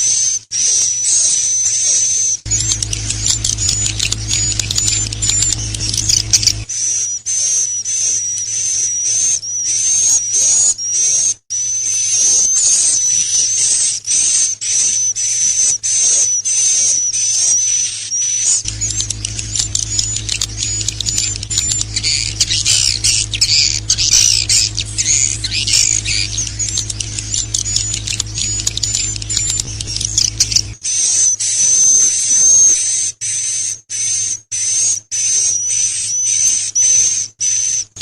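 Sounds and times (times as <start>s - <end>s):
songbird whistling and warbling: 2.1s - 13.5s, 18.2s - 32.4s
steady low hum: 2.5s - 6.7s, 18.6s - 30.8s.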